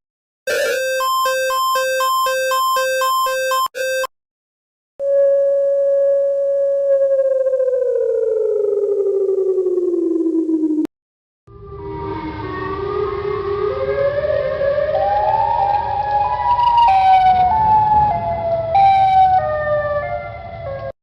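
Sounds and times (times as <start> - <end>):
synthesized alarm tones: 0.5 - 4.1.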